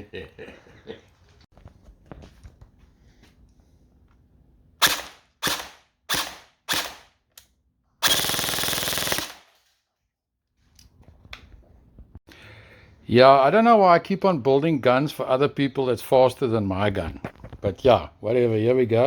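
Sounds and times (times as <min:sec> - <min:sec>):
airsoft gun firing bursts: 0:04.8 - 0:07.1, 0:08.0 - 0:09.6.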